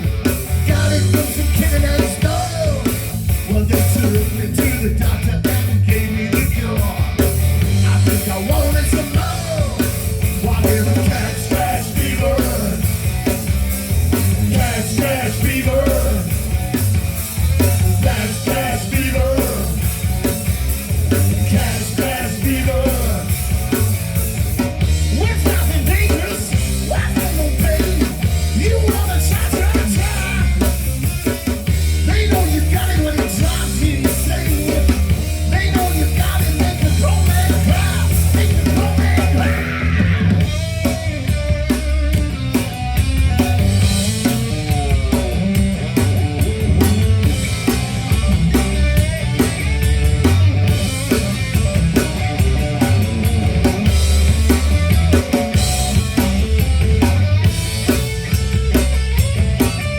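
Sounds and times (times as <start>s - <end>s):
live rock band playing: 0.0s - 59.9s.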